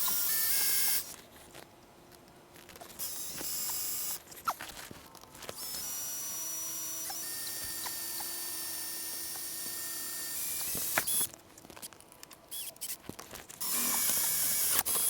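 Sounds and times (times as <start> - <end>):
power drill running: 0.0 - 1.1, 5.6 - 11.3, 13.6 - 15.0.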